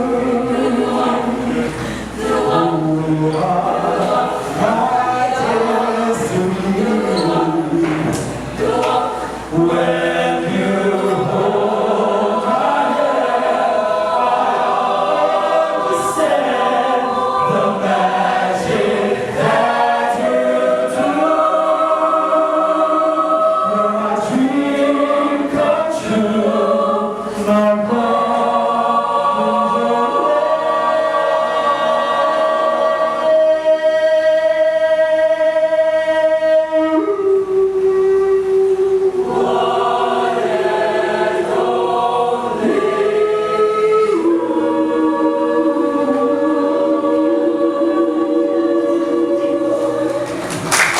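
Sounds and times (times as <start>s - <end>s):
choir singing in harmony: 0.0s - 50.9s.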